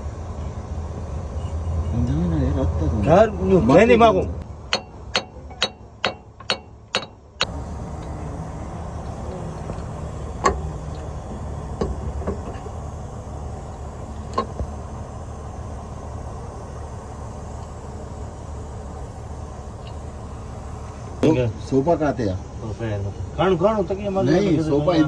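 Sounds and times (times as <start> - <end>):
steady low hum: 0.0 - 25.0
scattered knocks: 4.7 - 7.6.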